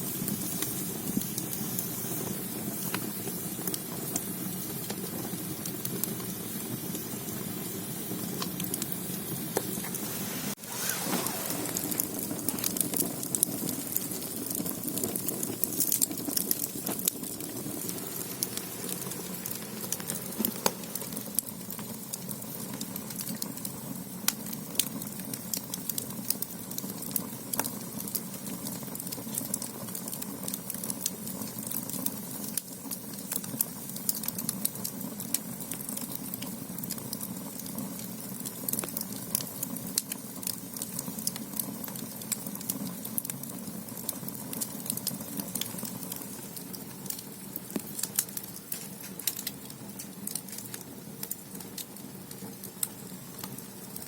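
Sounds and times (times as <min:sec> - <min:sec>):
firewood crackling and popping: 0:00.0 - 0:54.0
low rush of flame: 0:06.5 - 0:22.4.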